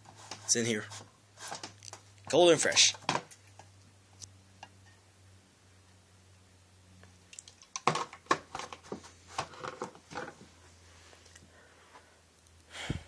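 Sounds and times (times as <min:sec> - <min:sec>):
objects knocking and crinkling: 0:02.9 - 0:03.7, 0:07.3 - 0:10.6.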